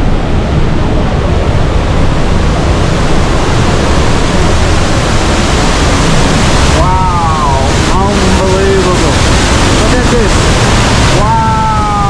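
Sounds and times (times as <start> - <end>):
waterfall rushing: 2.4 - 12.0.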